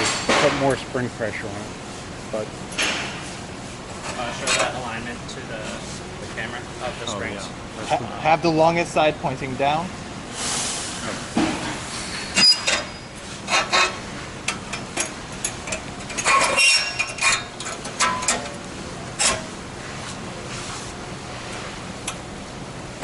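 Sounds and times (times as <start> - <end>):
metal springs clinking: 14.6 - 18.6.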